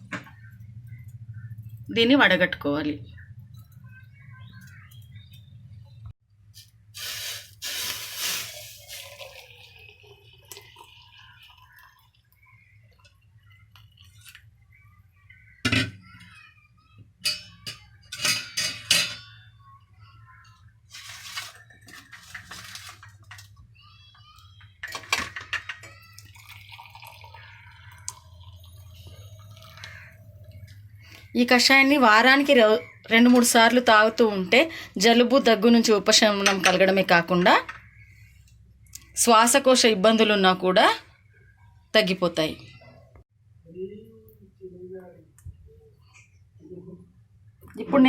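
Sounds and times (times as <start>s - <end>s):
liquid pouring and dripping: 7.2s - 14.4s, 25.9s - 30.8s
steel utensils clinking: 17.2s - 19.4s.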